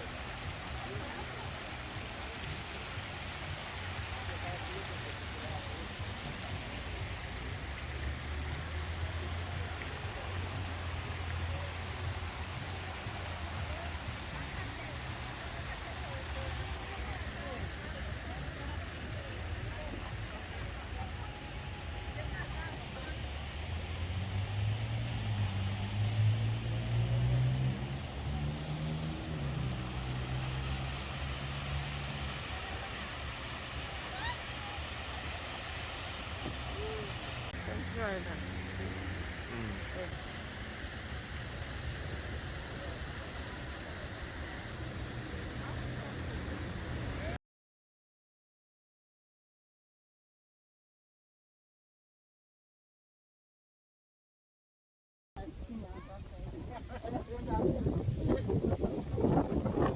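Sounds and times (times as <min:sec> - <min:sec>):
road hiss: 0:00.0 - 0:47.4
steady background noise: 0:00.0 - 0:47.4.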